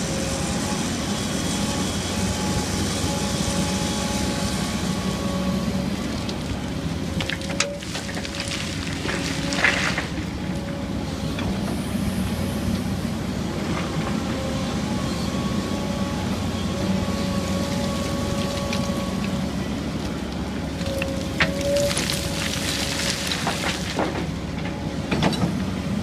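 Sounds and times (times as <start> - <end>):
hydraulic whine: 0.0 - 8.4
excavator diesel drone: 0.0 - 26.0.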